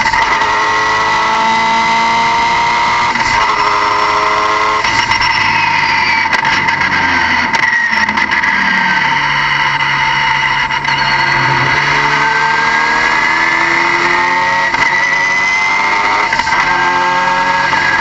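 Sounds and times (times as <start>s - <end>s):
car engine running: 7.4s - 16.8s
turbo whine: 7.9s - 15.3s.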